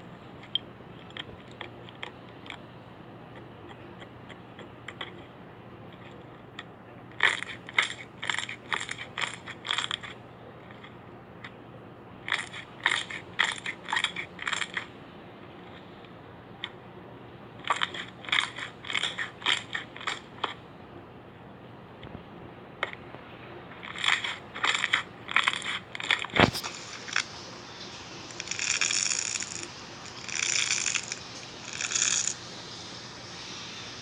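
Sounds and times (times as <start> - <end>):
slime squelching: 23.7 - 32.9.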